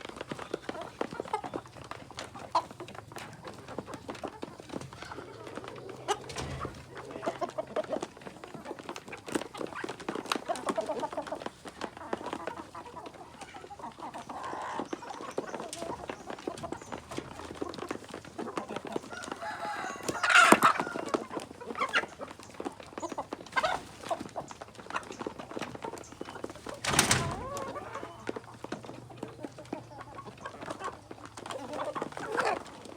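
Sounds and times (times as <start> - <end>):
chickens clucking: 0.0 - 32.9
loud chicken call: 19.2 - 21.2.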